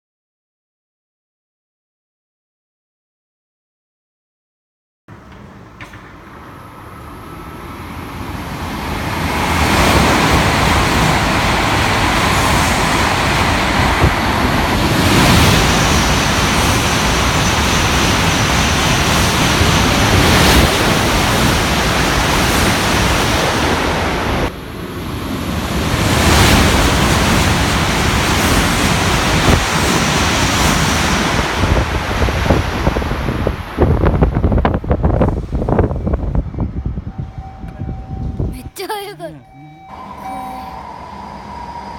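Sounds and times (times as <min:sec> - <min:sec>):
high speed train passing: 0:05.1 - 0:41.9
wind buffeting microphone: 0:08.6 - 0:24.5, 0:25.4 - 0:38.6.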